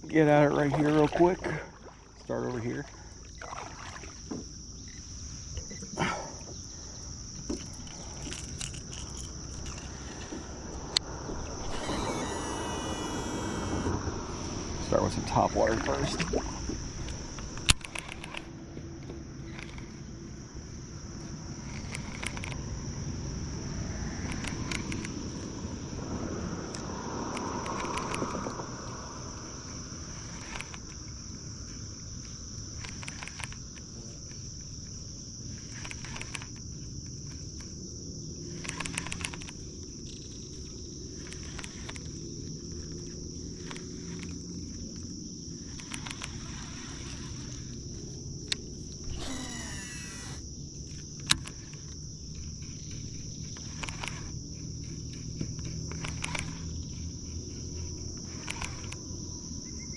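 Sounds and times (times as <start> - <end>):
insects droning: 0.0 - 59.9
faint clicks: 24.2 - 25.5, 26.7 - 29.0, 38.6 - 47.8, 48.4 - 59.0.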